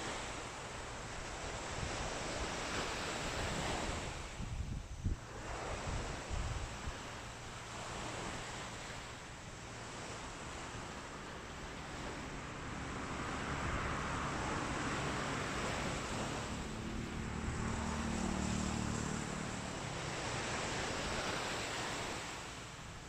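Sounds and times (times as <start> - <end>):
waves washing onto beach: 0.0 - 23.0
wind on microphone: 1.0 - 22.6
low motor hum: 10.5 - 21.8.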